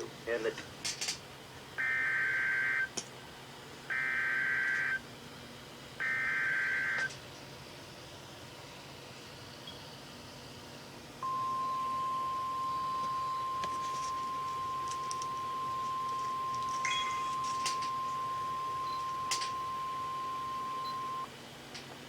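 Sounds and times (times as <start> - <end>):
steady warning alarm beep: 1.8 - 2.9, 3.9 - 5.0, 6.0 - 7.2, 11.2 - 21.3.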